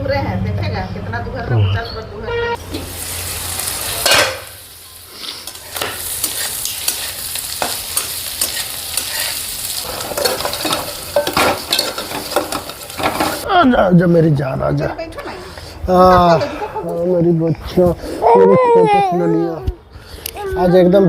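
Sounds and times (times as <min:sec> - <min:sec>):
spoon scraping a pan: 0:02.5 - 0:13.4
food sizzling in a pan: 0:02.6 - 0:13.5.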